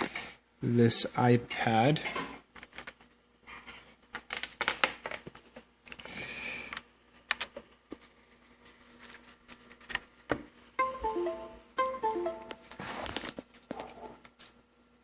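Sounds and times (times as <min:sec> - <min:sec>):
tablet handling rustles: 0:08.7 - 0:10.1, 0:12.7 - 0:14.6.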